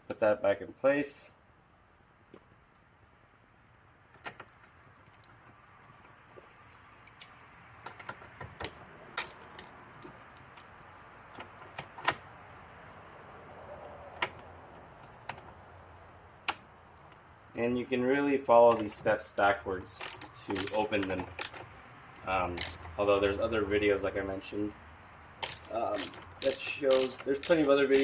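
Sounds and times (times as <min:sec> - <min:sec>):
soft rustling: 0:04.4 - 0:07.5.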